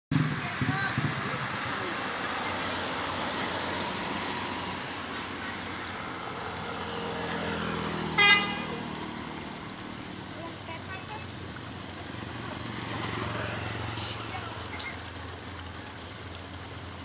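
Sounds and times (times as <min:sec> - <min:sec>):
road traffic: 0:00.1 - 0:17.0
vehicle engine drone: 0:00.1 - 0:17.0
bus horn toot: 0:08.1 - 0:08.8.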